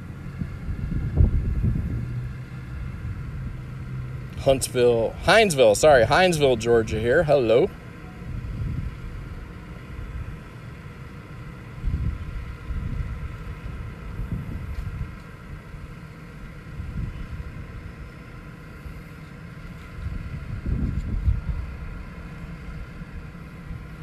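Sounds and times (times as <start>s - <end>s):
wind buffeting microphone: 0.0s - 3.8s, 8.2s - 10.4s, 11.7s - 15.2s, 16.7s - 17.8s, 20.0s - 22.0s
steady mechanical hum: 0.0s - 24.0s.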